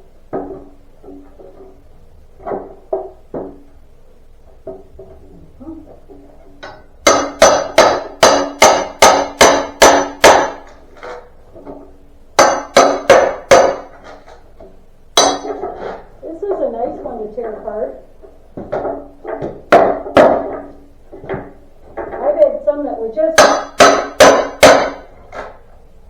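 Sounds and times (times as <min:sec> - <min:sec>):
hammer striking wooden pallet: 0:06.6 - 0:14.4, 0:18.6 - 0:22.2, 0:23.4 - 0:25.6.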